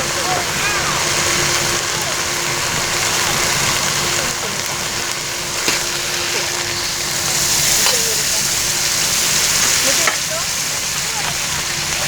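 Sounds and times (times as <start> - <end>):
faint voices: 0.0 - 12.0
food sizzling on a grill: 0.0 - 12.0.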